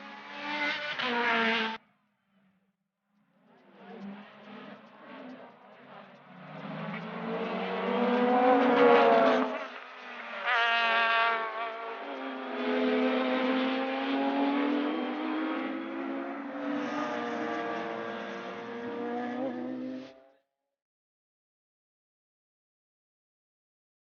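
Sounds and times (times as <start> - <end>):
racing car engines passing: 0.0 - 1.8, 3.3 - 20.3
engine revving hard: 11.3 - 20.2.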